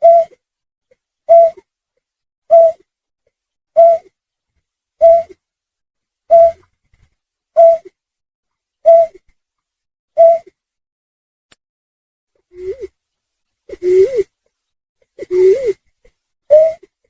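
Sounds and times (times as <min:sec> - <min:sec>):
snipe call hooting: 0:00.0 - 0:00.3, 0:02.5 - 0:02.8, 0:03.8 - 0:04.1, 0:05.0 - 0:05.4, 0:06.3 - 0:06.6, 0:07.6 - 0:07.8, 0:08.9 - 0:09.1, 0:10.2 - 0:10.5, 0:15.2 - 0:15.7, 0:16.5 - 0:16.8.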